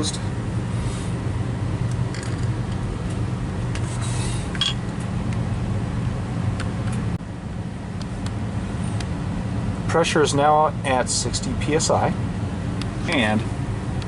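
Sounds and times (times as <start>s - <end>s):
well pump humming: 0.0s - 14.0s.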